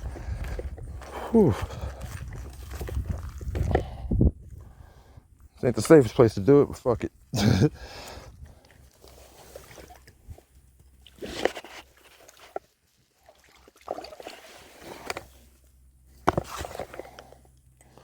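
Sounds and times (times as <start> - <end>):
rustles: 8.1 - 18.0
water sloshing: 8.4 - 15.6.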